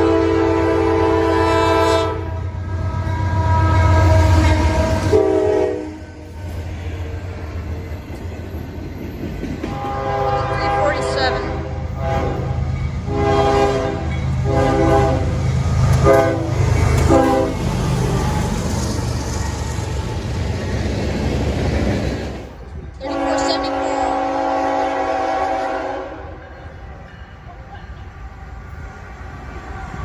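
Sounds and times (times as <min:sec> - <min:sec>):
locomotive air horn blasts: 0:00.0 - 0:06.2, 0:09.7 - 0:15.3, 0:16.0 - 0:17.6, 0:23.0 - 0:26.4
train rumble: 0:00.0 - 0:30.0.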